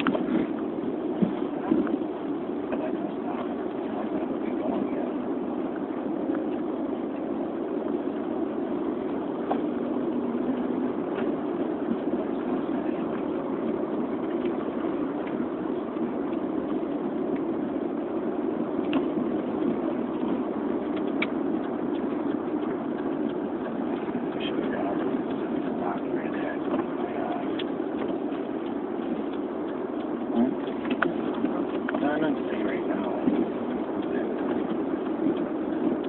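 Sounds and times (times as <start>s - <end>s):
vehicle engine rumble: 0.0s - 36.0s.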